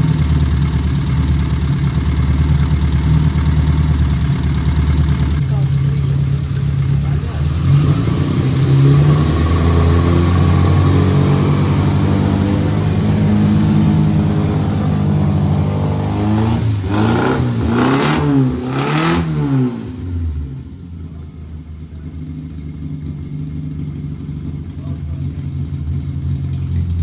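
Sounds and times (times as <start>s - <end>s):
car engine revving: 0.0s - 5.4s, 6.1s - 20.3s.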